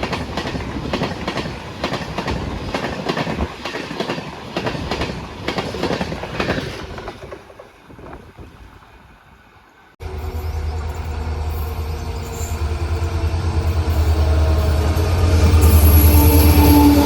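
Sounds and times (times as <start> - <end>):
train rumbling past: 0.0 - 17.0
thin high squeal: 10.1 - 17.0.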